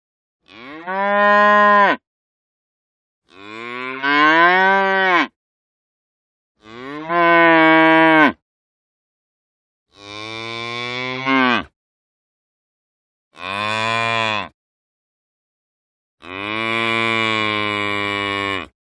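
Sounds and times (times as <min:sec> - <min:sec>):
cow mooing: 0:00.5 - 0:02.0, 0:03.3 - 0:05.3, 0:06.6 - 0:08.4, 0:09.9 - 0:11.7, 0:13.4 - 0:14.5, 0:16.2 - 0:18.7.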